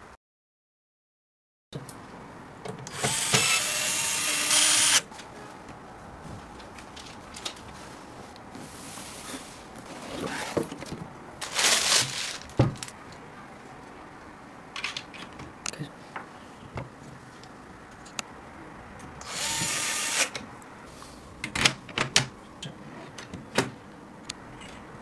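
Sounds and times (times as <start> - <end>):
electric screwdriver whirring: 2.9 - 5.0, 19.2 - 20.3
handling noises: 5.0 - 15.6.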